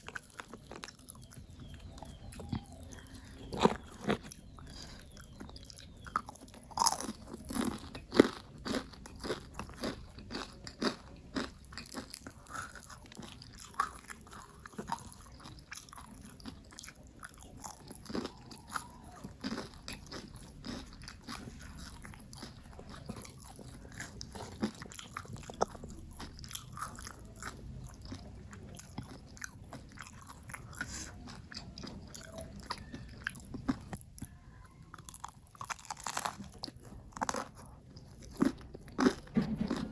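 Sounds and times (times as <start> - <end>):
crunchy chewing of fried food: 0.0 - 39.9.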